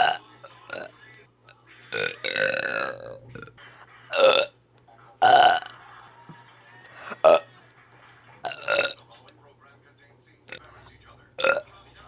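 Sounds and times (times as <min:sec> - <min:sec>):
person burping: 0:01.9 - 0:04.6, 0:05.2 - 0:05.8, 0:08.4 - 0:09.0, 0:11.4 - 0:11.7.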